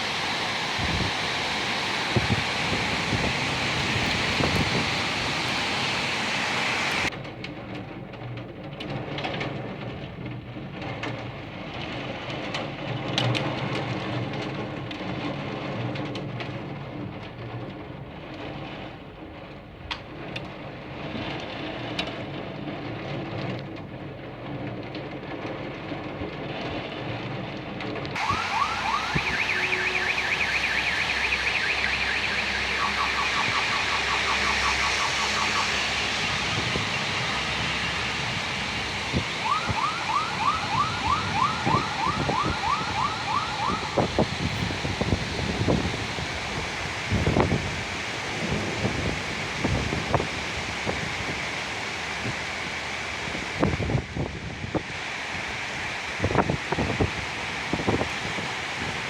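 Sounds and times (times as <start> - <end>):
heavy rain: 0.0 - 7.7, 8.3 - 59.0
raindrops clicking on a surface: 3.0 - 5.6, 7.1 - 29.5
car alarm: 28.2 - 38.1, 39.3 - 44.4.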